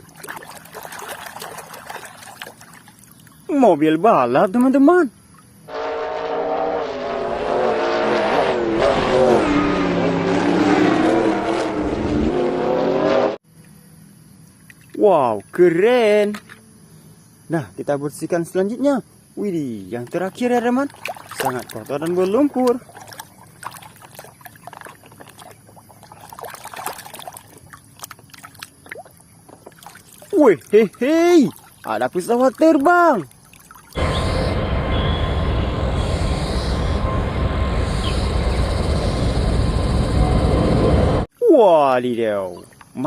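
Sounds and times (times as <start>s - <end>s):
water splashing and trickling: 0.0s - 5.7s, 19.6s - 34.0s, 41.5s - 43.0s
racing car engine at high revs: 6.0s - 13.4s.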